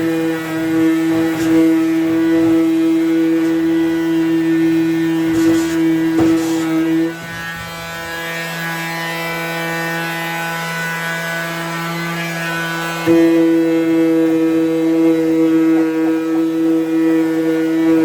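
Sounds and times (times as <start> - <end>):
electric sander on wood: 0.0 - 18.0
brief knocks: 5.2 - 8.1.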